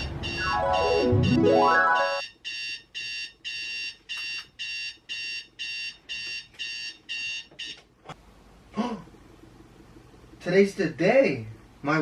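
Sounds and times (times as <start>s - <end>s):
alarm clock beeping: 0.0s - 7.8s.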